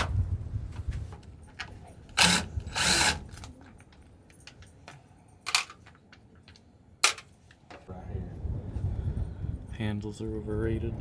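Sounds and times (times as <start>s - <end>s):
tool and metal handling noise: 0.0s - 7.9s.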